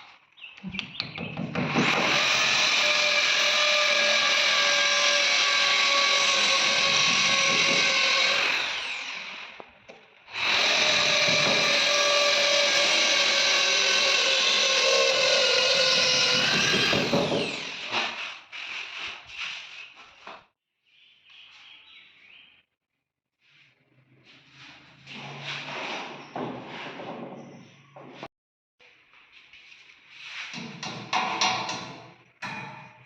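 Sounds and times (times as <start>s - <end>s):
electric drill running: 1.8s - 9.6s, 10.3s - 17.8s.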